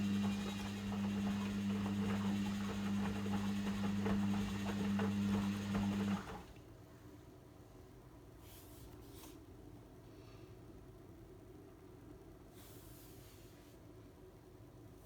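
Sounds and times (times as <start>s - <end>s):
washing machine humming and rattling: 0.0s - 6.8s.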